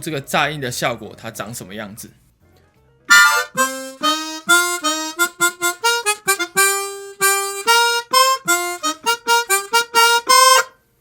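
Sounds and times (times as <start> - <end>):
harmonica playing fast melody: 3.1 - 10.8.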